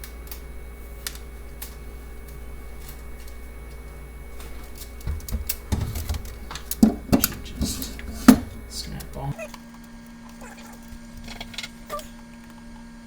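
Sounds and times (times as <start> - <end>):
steady low hum: 0.0 - 13.0
plastic parts clicking and tapping: 4.8 - 9.2
knocks: 5.1 - 8.7.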